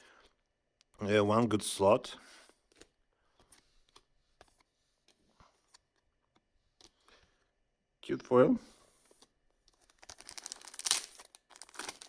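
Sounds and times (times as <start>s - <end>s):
trading cards being handled: 9.0s - 12.0s.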